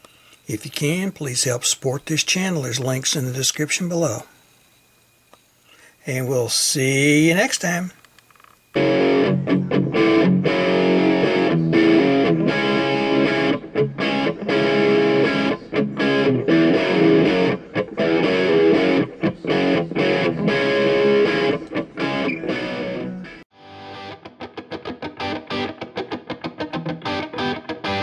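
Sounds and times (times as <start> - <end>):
distorted electric guitar chords: 8.8 - 28.0.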